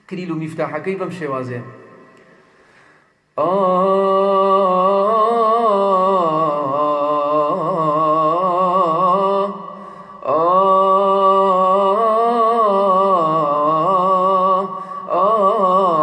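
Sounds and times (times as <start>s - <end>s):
man chanting: 0.0s - 2.0s, 3.4s - 16.0s.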